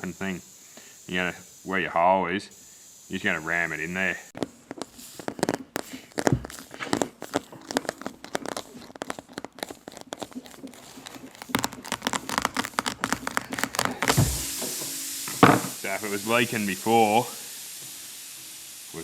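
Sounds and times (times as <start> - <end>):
air hissing from tyre: 0.0 - 7.6, 12.7 - 19.0
rasp tool rasping rubber tyre: 4.4 - 14.5.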